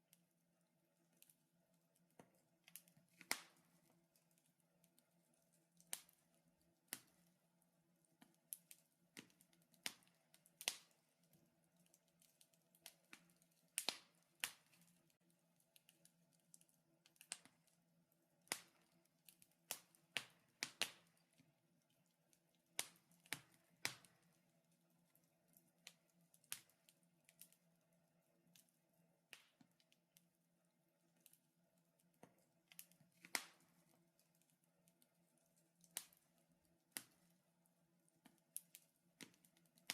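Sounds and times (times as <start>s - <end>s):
firewood crackling: 2.6s - 7.3s, 8.1s - 17.8s, 18.4s - 27.6s, 32.0s - 37.4s.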